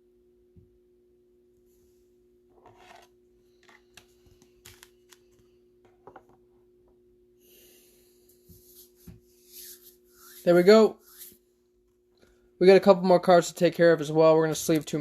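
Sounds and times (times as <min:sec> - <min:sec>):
faint electrical hum: 0:00.0 - 0:15.0
plastic card sleeves clicking and rustling: 0:03.6 - 0:05.4.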